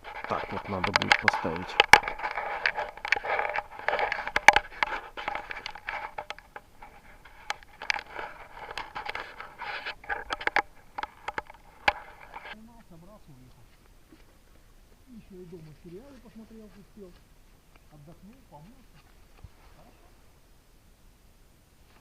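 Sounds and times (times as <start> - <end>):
camera handling noise: 0.1 - 12.6
clicks and knocks of camera: 0.2 - 6.6, 7.3 - 12.6.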